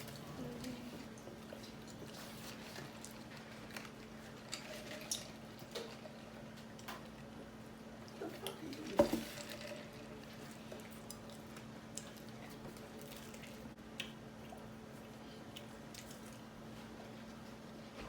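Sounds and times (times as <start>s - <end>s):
wet chewing clicks and smacks: 10.8s - 16.5s.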